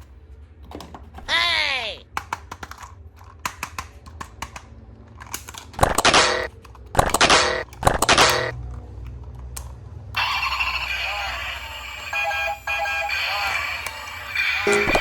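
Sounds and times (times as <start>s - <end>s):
plastic toy pieces clicking: 2.1s - 8.6s.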